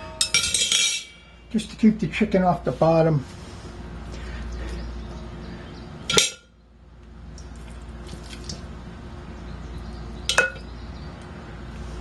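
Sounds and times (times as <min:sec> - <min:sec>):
metal cookware clinking: 0:00.0 - 0:01.3, 0:06.1 - 0:06.5, 0:10.3 - 0:10.6.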